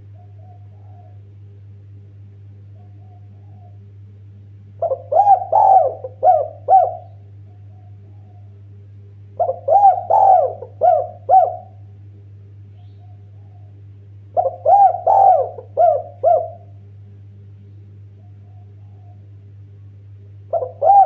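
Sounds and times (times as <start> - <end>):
dove cooing: 0.0 - 1.6, 2.7 - 4.0, 4.8 - 8.7, 9.4 - 11.9, 12.8 - 16.9, 18.0 - 19.4, 20.5 - 21.0
steady low hum: 0.0 - 21.0.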